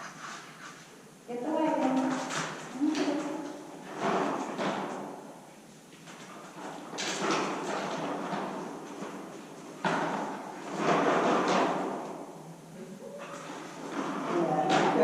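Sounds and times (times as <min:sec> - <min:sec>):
toy wagon rattling on hard floor: 0:06.1 - 0:12.0.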